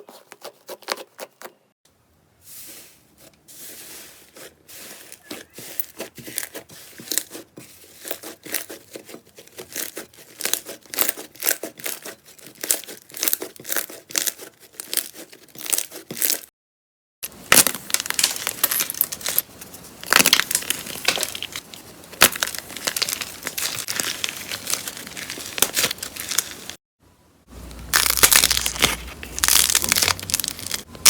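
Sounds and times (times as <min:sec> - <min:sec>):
slime crackling and popping: 0:20.1 - 0:26.8, 0:27.6 - 0:30.9.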